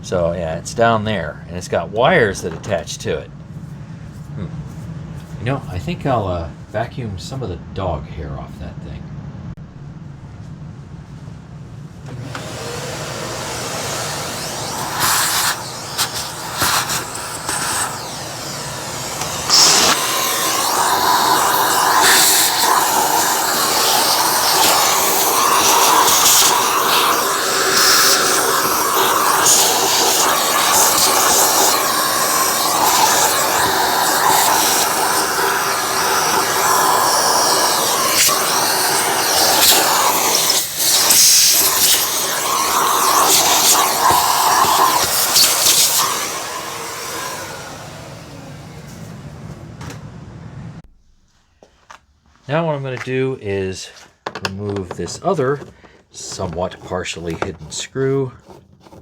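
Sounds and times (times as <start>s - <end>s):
vacuum cleaner sucking: 12.1s - 50.9s.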